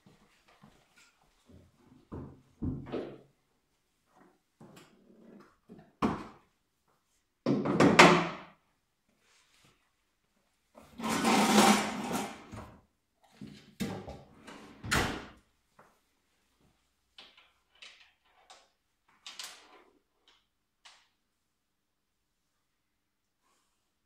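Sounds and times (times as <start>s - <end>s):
loud scraping clatter: 11.0s - 12.5s.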